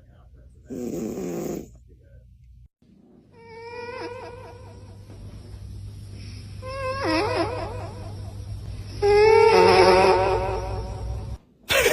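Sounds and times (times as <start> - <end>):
cat snoring: 0.7 - 1.8.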